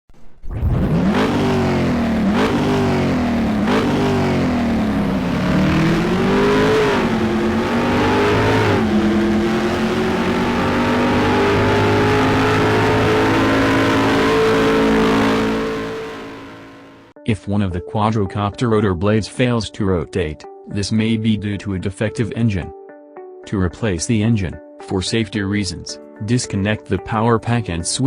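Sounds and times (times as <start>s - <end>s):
race car engine revving: 0.5s - 17.1s.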